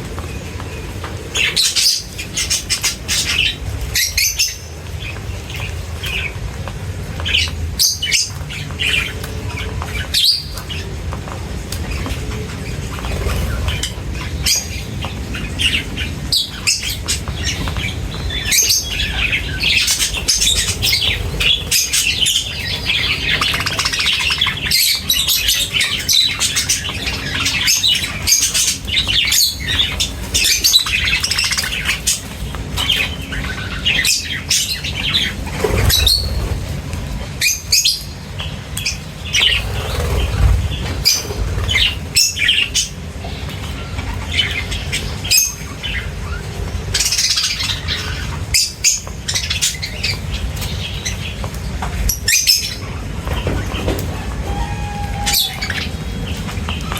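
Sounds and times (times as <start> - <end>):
small birds chirping: 0.0 - 56.9
low rumble: 39.3 - 42.1.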